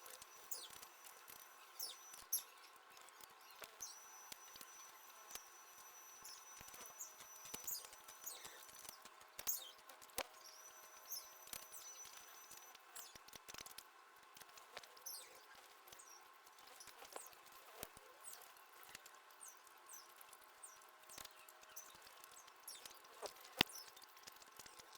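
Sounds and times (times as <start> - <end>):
high bird chirps: 3.4 - 9.8.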